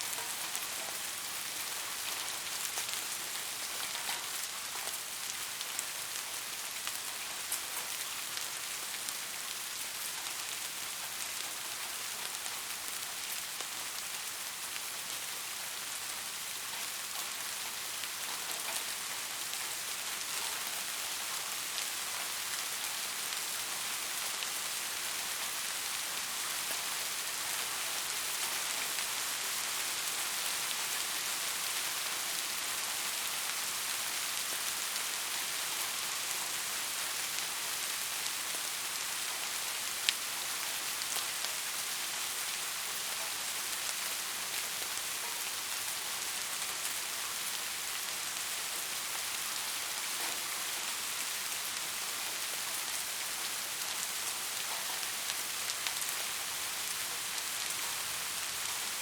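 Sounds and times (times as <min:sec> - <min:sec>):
steady rain hiss: 0:00.0 - 0:59.0
raindrop ticks: 0:03.7 - 0:05.0.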